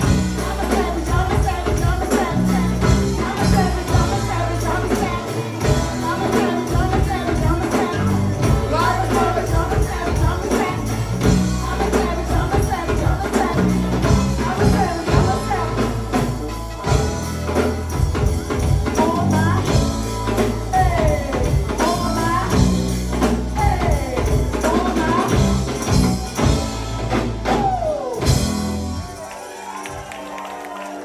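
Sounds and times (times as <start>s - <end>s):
person singing: 0.0s - 16.4s, 18.8s - 26.5s
heavy bass line: 0.0s - 29.1s
drums and hand percussion: 0.0s - 30.8s
live go-go band music: 0.0s - 31.0s.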